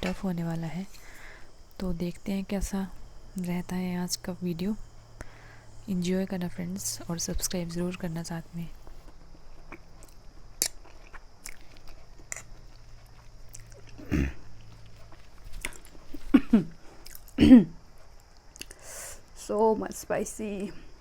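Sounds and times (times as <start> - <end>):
person chewing noodles: 8.9 - 16.3, 17.0 - 17.4.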